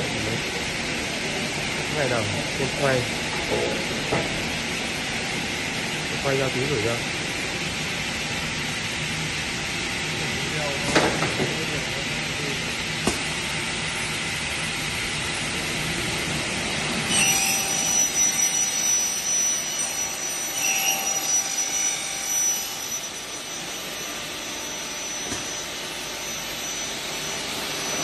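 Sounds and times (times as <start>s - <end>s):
cutting saw humming: 16.4s - 28.0s
thin high whine: 16.9s - 28.0s.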